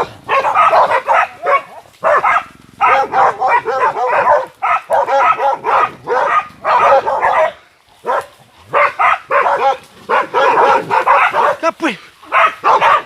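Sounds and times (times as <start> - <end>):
dogs barking: 0.0 - 13.0.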